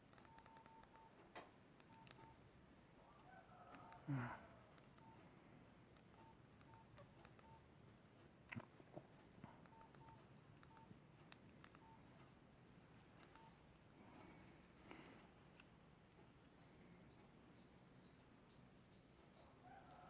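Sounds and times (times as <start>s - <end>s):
sharp clicks: 0.0s - 2.4s, 4.7s - 5.3s, 5.9s - 7.6s, 9.4s - 12.4s, 13.0s - 13.6s
phone keypad beeps: 0.1s - 1.2s, 1.8s - 2.5s, 4.8s - 5.4s, 6.0s - 7.7s, 9.5s - 11.0s, 11.6s - 12.2s, 13.2s - 13.7s.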